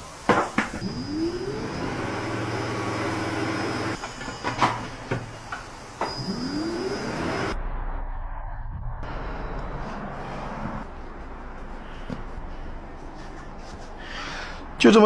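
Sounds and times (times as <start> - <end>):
workshop noise and hiss: 0.0 - 7.6
power tool whining: 0.8 - 7.6.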